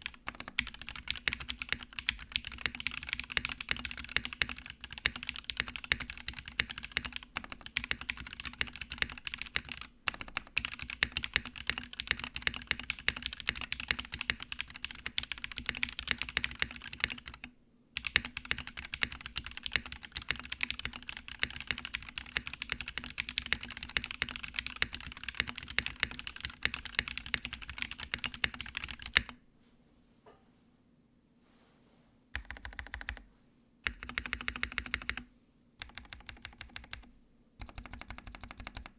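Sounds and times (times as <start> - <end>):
fast typing on keyboard: 0.0 - 29.4, 32.4 - 33.2, 33.8 - 38.9.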